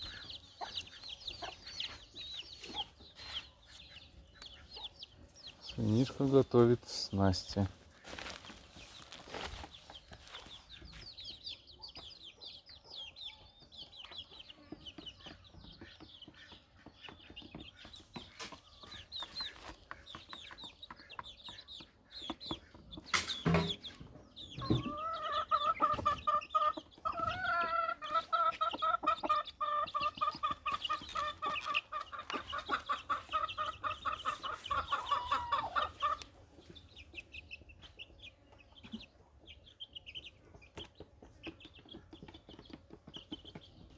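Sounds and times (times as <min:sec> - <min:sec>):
chickens chirping: 0:00.0 - 0:43.9
chicken clucking rapidly: 0:09.7 - 0:43.9.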